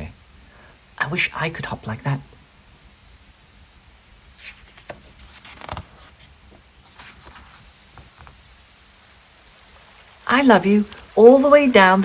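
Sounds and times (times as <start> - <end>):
crickets chirping: 0.0 - 12.0
soft rustles: 4.3 - 8.7.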